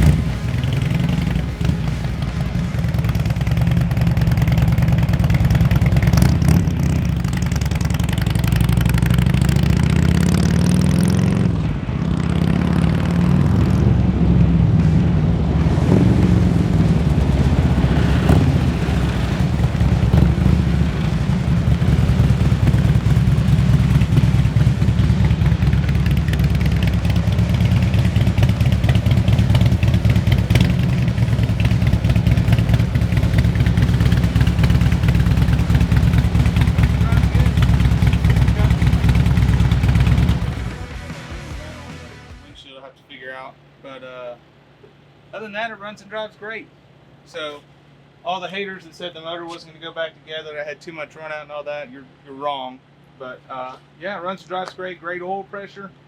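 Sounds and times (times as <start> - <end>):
motorcycle engine running: 0.0 - 42.5.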